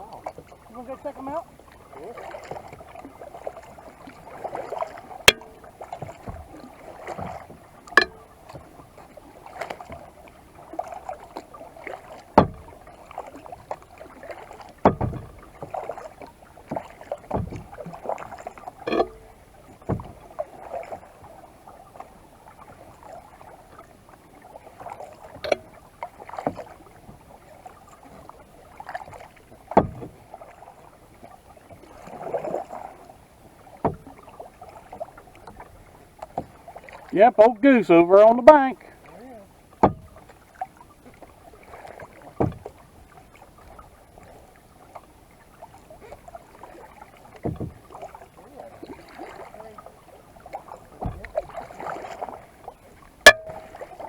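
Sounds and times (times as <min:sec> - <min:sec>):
paddle splashing and dripping: 0:00.0 - 0:54.0
sharp knocks: 0:05.3 - 0:05.6, 0:08.0 - 0:08.3, 0:18.9 - 0:20.1, 0:53.3 - 0:53.8.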